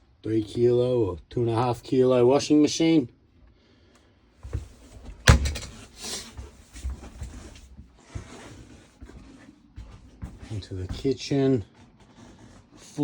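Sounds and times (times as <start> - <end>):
shuffling and handling noises: 4.4 - 13.0
door shutting knock: 5.2 - 5.9.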